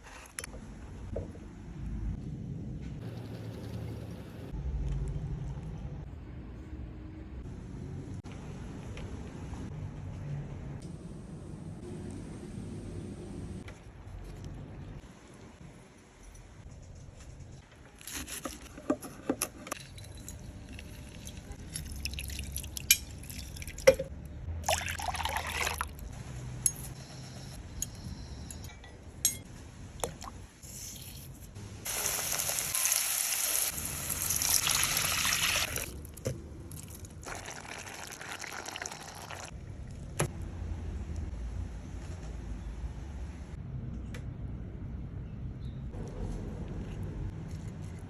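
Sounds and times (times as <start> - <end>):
liquid pouring and splashing: 20.7 - 24.0, 24.6 - 26.0, 34.1 - 36.1, 36.7 - 39.5.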